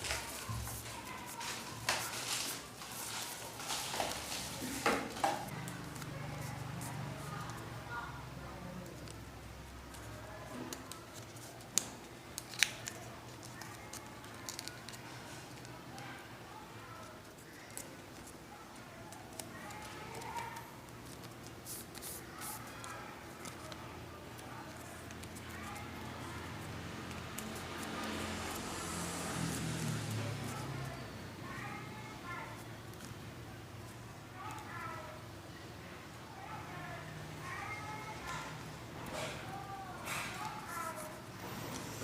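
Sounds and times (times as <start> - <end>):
paper crinkling and rustling: 0.0 - 7.5
faint indistinct voices: 0.0 - 42.0
paper being creased: 9.9 - 15.8.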